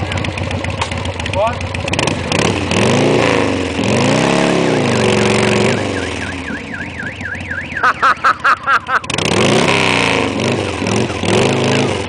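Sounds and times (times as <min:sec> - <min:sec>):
motorcycle engine revving: 0:00.0 - 0:12.0
car alarm warbling and beeping: 0:04.4 - 0:09.1, 0:11.3 - 0:12.0.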